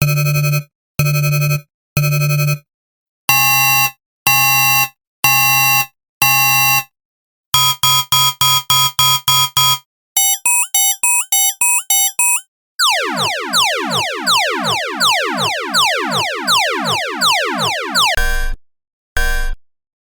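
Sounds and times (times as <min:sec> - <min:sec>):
electronic beeps: 0:10.5 - 0:18.3
chirping alarm: 0:12.2 - 0:18.2
fast pulsing alarm: 0:12.2 - 0:18.3.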